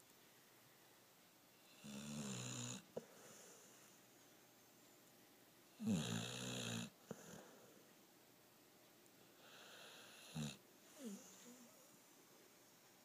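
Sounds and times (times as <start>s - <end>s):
dog snoring: 1.6s - 3.7s, 5.8s - 7.6s, 9.4s - 11.7s.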